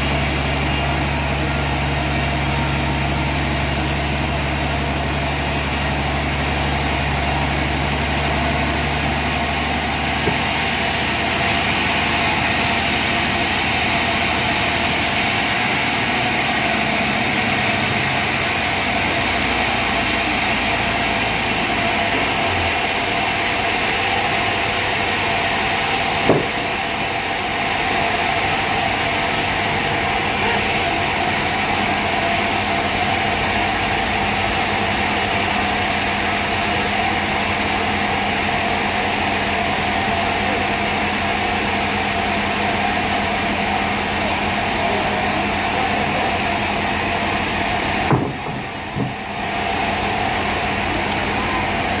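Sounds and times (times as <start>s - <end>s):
sawmill machinery drone: 0.0s - 52.0s
sharp knock: 26.2s - 26.7s, 48.1s - 49.2s.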